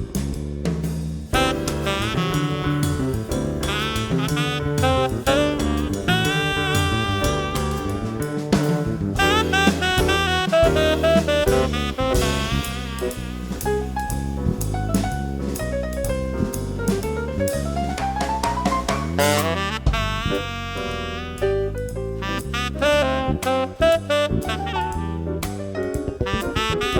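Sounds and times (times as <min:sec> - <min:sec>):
bass: 0:00.0 - 0:26.9
drum kit: 0:00.0 - 0:26.9
saxophone melody: 0:01.4 - 0:14.0, 0:19.2 - 0:25.2, 0:26.3 - 0:26.9.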